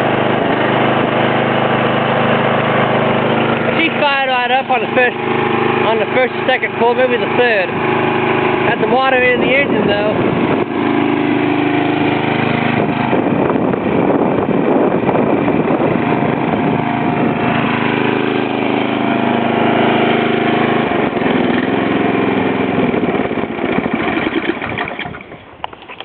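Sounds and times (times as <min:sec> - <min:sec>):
lawn mower engine running: 0:00.0 - 0:26.0.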